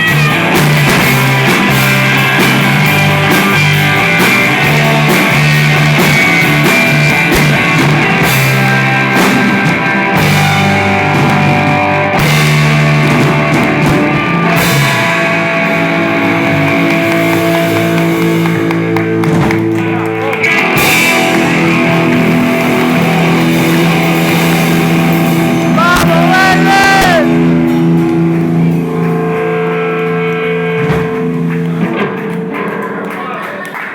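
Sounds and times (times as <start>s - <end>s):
guitars holding chords: 0.0s - 33.5s
drums: 0.0s - 33.9s.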